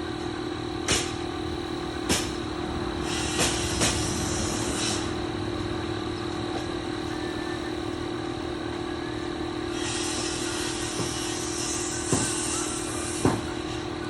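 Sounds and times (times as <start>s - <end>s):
engine droning: 0.0s - 14.0s
sharp knocks: 2.0s - 2.5s.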